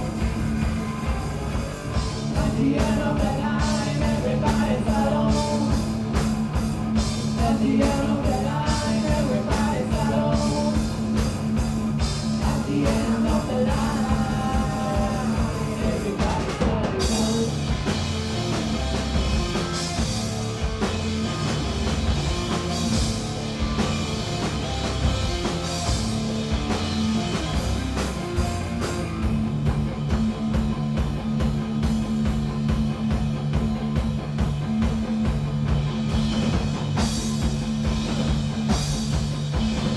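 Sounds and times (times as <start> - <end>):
punk rock band playing: 0.0 - 39.9
person singing: 2.3 - 5.9, 7.4 - 10.9, 12.4 - 17.6.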